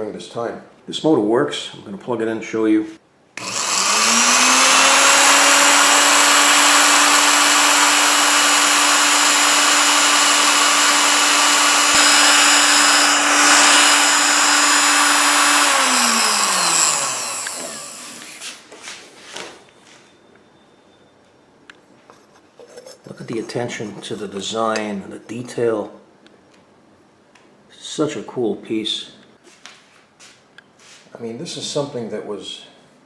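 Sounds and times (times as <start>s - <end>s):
electric motor spinning: 3.4s - 18.4s.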